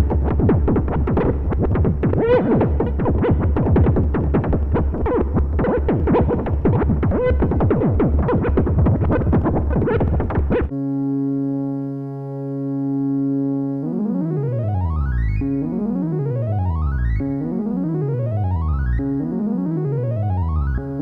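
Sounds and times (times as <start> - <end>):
synthesizer percussive hits: 0.0 - 10.7
pulsing synth bass: 0.0 - 21.0
sustained synth chord: 0.0 - 21.0.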